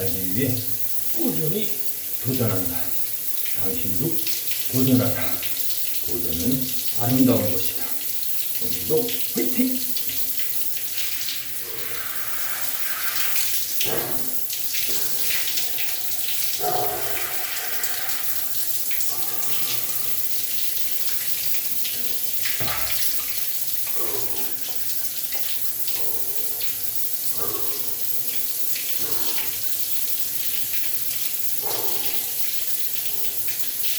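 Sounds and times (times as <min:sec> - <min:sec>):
running water splashing: 0:00.0 - 0:33.9.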